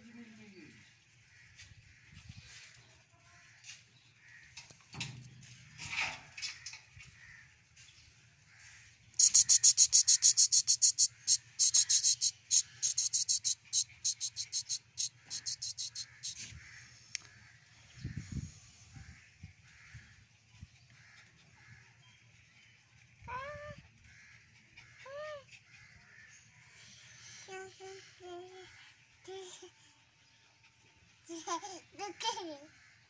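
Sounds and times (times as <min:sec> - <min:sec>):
high-pitched insect-like chirps: 0:09.2 - 0:16.4.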